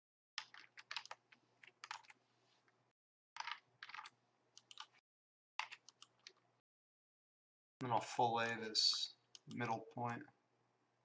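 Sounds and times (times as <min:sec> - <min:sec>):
faint keyboard typing: 0:00.4 - 0:02.8, 0:03.4 - 0:05.0, 0:05.6 - 0:06.5, 0:08.9 - 0:09.8.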